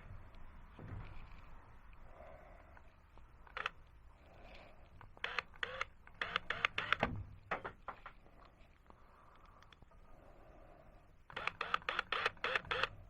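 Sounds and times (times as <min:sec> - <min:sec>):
sharp clicks and clacks: 0:05.0 - 0:08.3.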